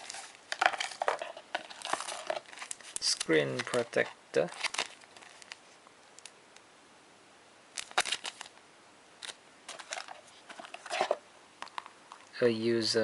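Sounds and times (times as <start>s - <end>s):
packaging crinkling and clicking: 0.0s - 5.6s, 6.2s - 6.4s, 7.8s - 8.6s, 9.2s - 12.3s.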